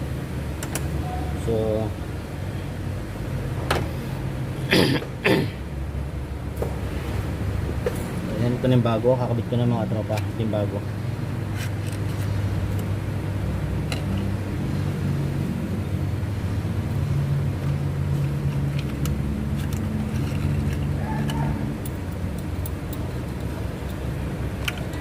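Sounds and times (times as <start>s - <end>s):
vehicle engine running: 10.2s - 25.0s.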